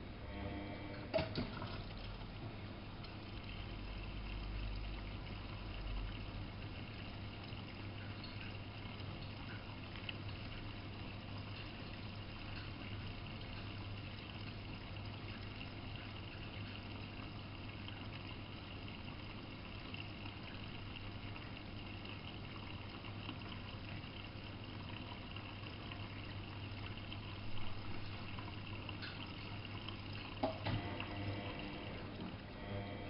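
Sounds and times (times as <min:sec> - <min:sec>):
low hum: 0:00.0 - 0:06.3
water rushing into washing machine: 0:00.0 - 0:33.0.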